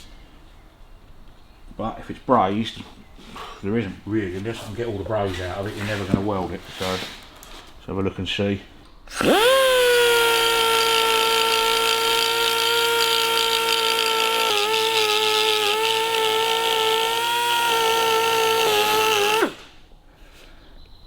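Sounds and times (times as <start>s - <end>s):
electric grinder whining: 9.1s - 19.7s.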